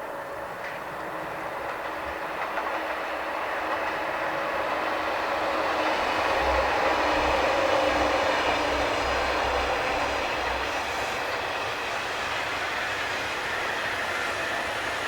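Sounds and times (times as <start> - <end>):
train rolling: 0.0 - 15.0.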